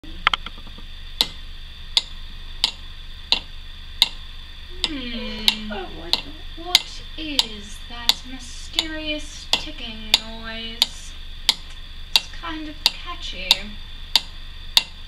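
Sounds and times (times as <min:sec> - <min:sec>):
steady sharp ticking: 0:00.2 - 0:15.0
person speaking: 0:04.7 - 0:07.2.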